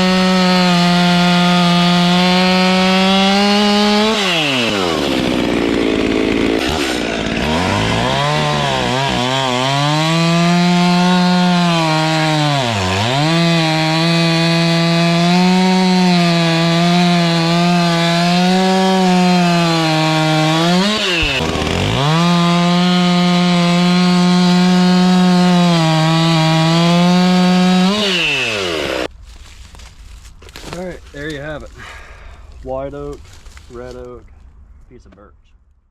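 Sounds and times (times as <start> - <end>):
chainsaw cutting logs: 0.0 - 29.1.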